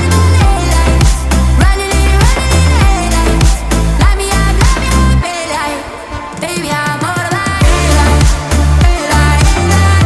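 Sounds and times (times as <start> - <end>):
electronic music with a beat: 0.0 - 10.0
falling bass sweeps: 7.6 - 10.0.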